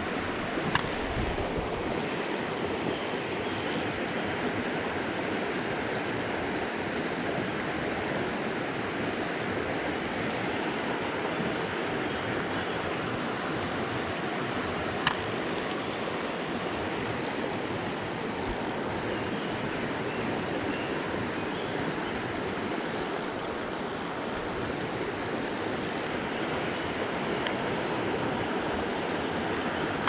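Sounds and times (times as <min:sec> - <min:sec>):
stream water rushing over rocks: 0:00.0 - 0:30.0
sharp click: 0:00.6 - 0:01.0.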